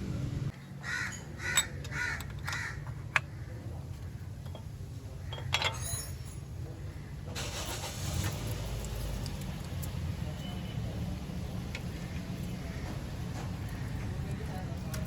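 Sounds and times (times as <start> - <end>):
crow cawing: 0.8 - 2.8.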